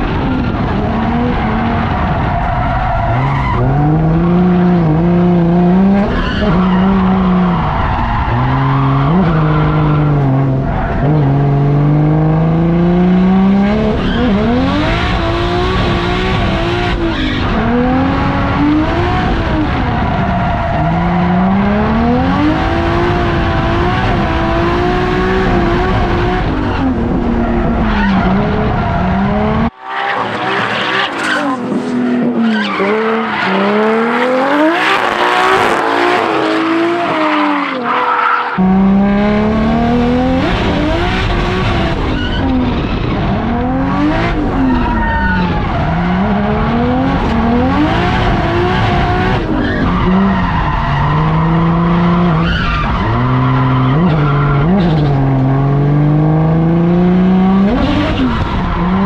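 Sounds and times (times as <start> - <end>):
tyres skidding and squealing: 0.0 - 11.7, 13.7 - 55.8
car engine revving: 0.0 - 59.0.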